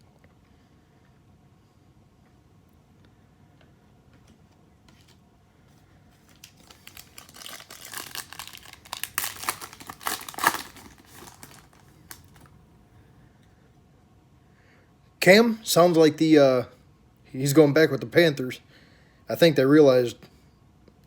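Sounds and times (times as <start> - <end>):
plastic wrapper crinkling and tearing: 6.2 - 12.5.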